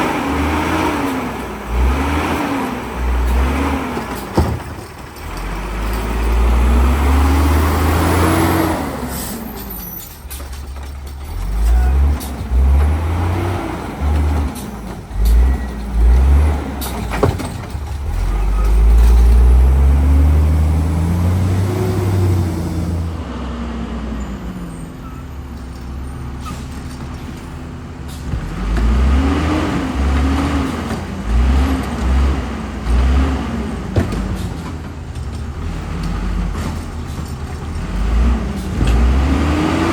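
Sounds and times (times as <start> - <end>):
garbage truck engine accelerating: 0.0 - 39.9
air brake releases: 9.0 - 10.4, 26.1 - 27.5.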